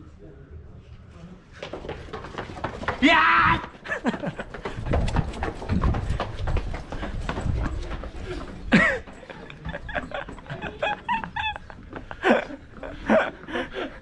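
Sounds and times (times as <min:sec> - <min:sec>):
people shouting: 0:03.0 - 0:03.8.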